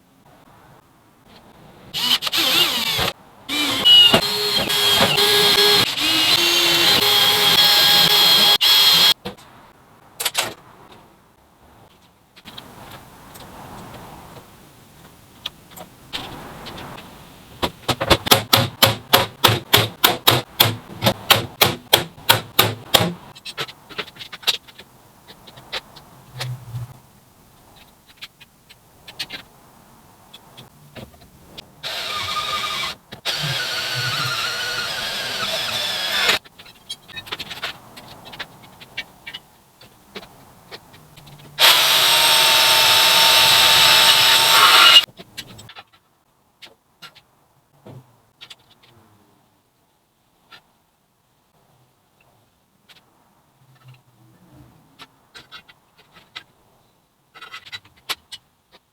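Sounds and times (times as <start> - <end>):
power tool running: 2.0 - 9.1, 31.9 - 36.4, 41.6 - 45.0.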